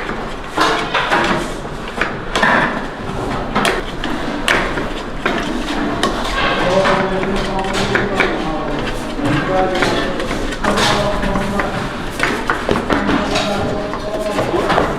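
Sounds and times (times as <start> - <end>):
kitchen knocks and clatter: 0.0 - 14.9
voices in background: 6.3 - 14.9.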